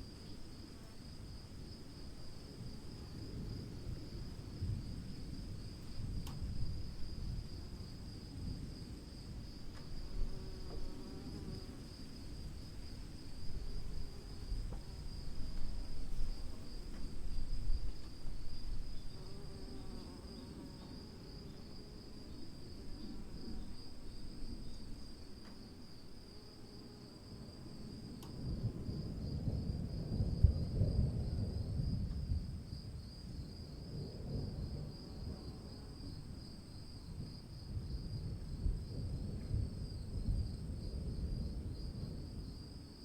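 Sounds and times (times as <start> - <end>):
insects trilling: 0.0 - 32.1.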